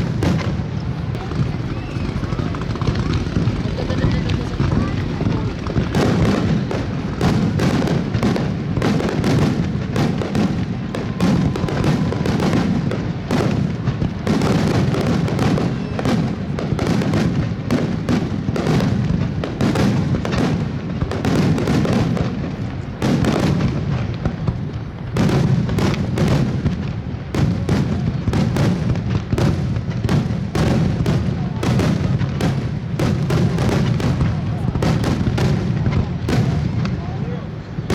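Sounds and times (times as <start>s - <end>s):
fireworks booming: 0.0s - 37.9s.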